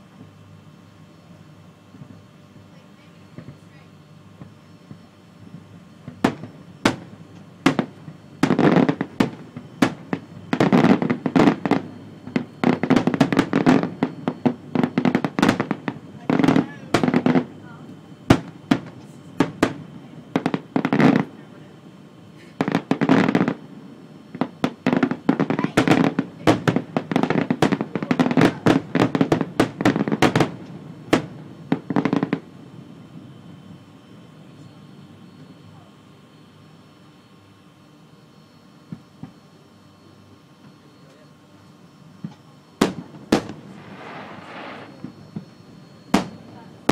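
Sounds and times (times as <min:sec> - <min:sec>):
fireworks bangs and crackling: 0:04.4 - 0:21.7, 0:22.4 - 0:23.7, 0:24.3 - 0:32.7, 0:42.2 - 0:46.9.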